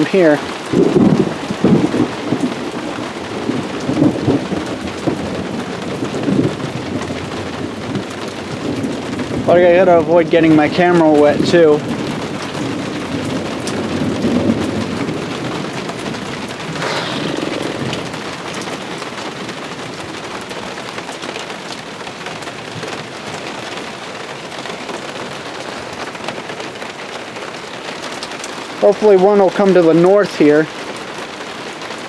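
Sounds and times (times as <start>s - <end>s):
low thunder rumbles: 0.0s - 20.8s
heavy rain pouring: 0.0s - 32.0s.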